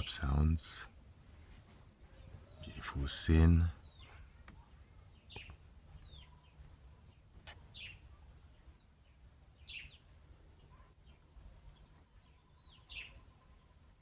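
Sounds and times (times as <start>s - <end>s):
small birds chirping: 0.0s - 14.0s
falling bird chirps: 2.0s - 8.8s.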